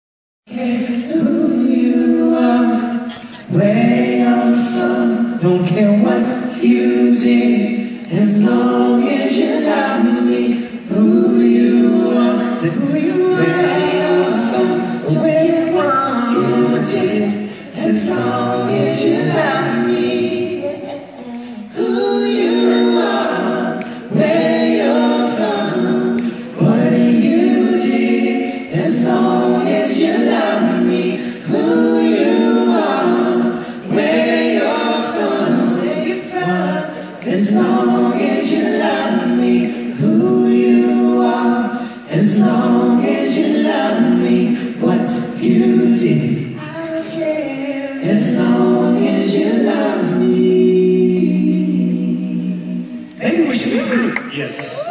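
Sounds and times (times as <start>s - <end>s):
voices singing a cappella: 0.5s - 54.9s.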